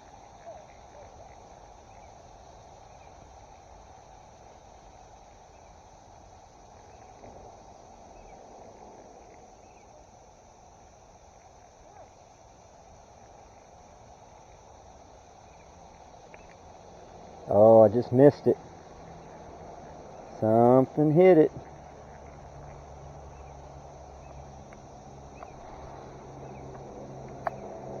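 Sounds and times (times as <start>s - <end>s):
insects buzzing: 0.0s - 28.0s
low background hiss: 0.0s - 28.0s
tiny ticks: 16.2s - 16.7s, 21.6s - 25.9s, 26.5s - 27.9s.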